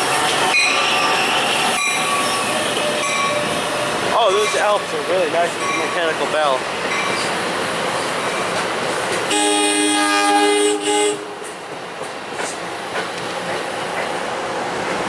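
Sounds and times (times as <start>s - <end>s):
electric train on rails: 0.0s - 15.0s
train horn blast: 9.3s - 11.5s.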